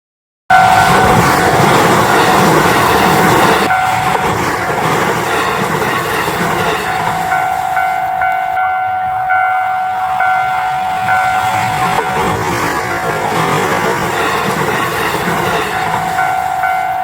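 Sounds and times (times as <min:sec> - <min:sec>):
crossing warning bell ringing: 0:00.5 - 0:17.0
train wheels on rails: 0:00.5 - 0:17.0.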